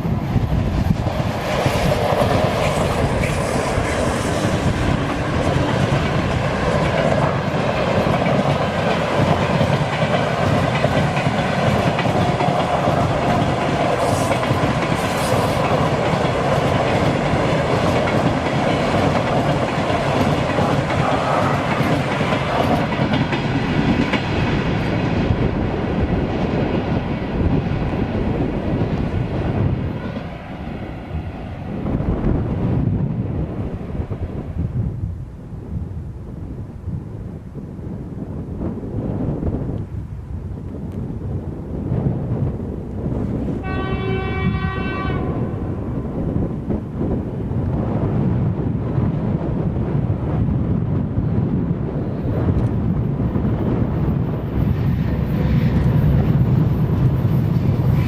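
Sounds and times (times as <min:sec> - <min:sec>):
train wheels clattering: 0:00.9 - 0:24.7.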